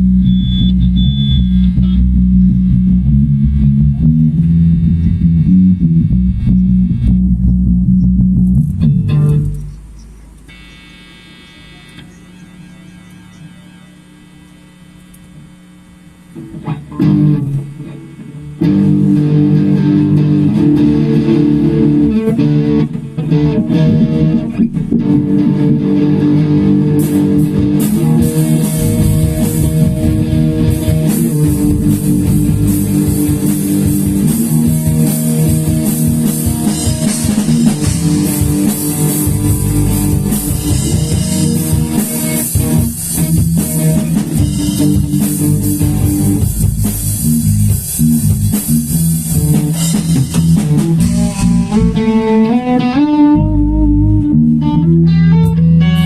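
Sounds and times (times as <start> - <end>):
faint hum: 0.0 - 55.6
bass guitar: 0.0 - 56.0
electric guitar: 0.0 - 56.0
drums and cymbals: 27.0 - 51.8.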